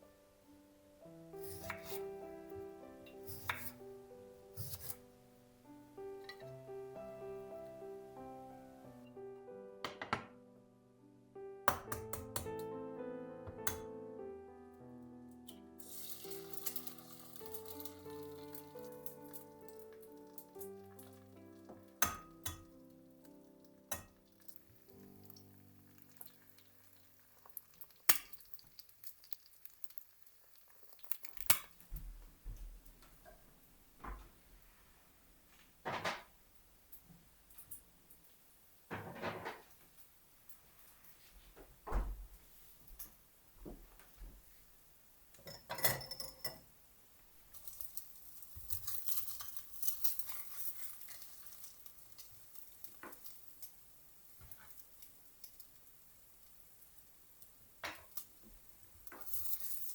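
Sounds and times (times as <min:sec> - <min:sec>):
food sizzling in a frying pan: 0:15.8 - 0:31.8
dishware clinking: 0:45.4 - 0:46.7.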